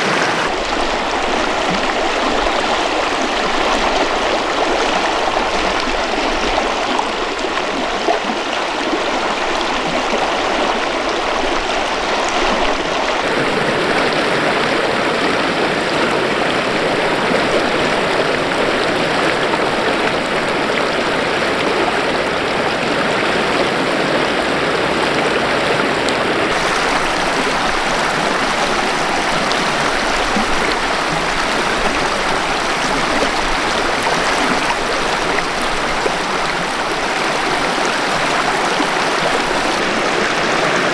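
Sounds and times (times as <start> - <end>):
river rushing over rocks: 0.0 - 0.6, 22.4 - 40.9.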